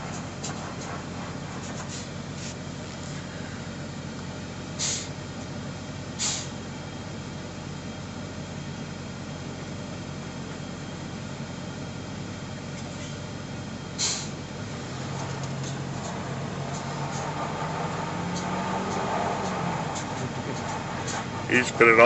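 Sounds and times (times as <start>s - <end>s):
diesel engine idling: 0.0s - 22.0s
air brake hisses: 4.8s - 5.2s, 6.2s - 6.6s, 14.0s - 14.4s.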